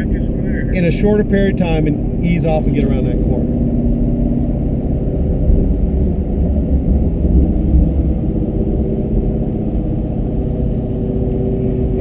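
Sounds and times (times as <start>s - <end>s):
car engine running: 0.0s - 12.0s
tyre and road rumble: 0.0s - 12.0s.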